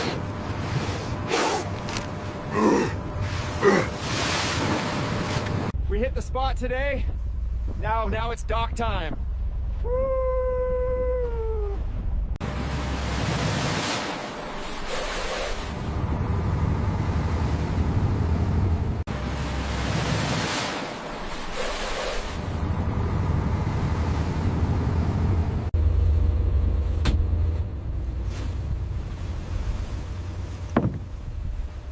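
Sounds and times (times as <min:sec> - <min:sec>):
waves washing against hull: 0:00.0 - 0:05.8, 0:12.4 - 0:31.9
low rumble: 0:05.0 - 0:13.6, 0:15.5 - 0:20.4, 0:22.2 - 0:31.9.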